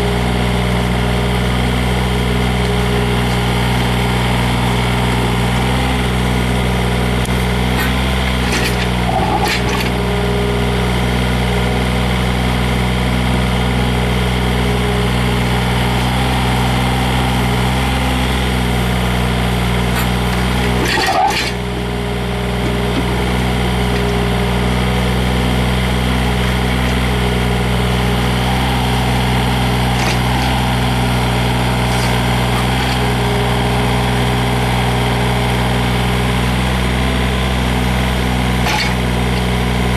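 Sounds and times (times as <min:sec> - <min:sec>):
excavator diesel engine running: 0:00.0 - 0:39.9
sharp metal clanks: 0:07.8 - 0:10.0, 0:19.9 - 0:21.7, 0:30.0 - 0:30.6, 0:38.6 - 0:39.1.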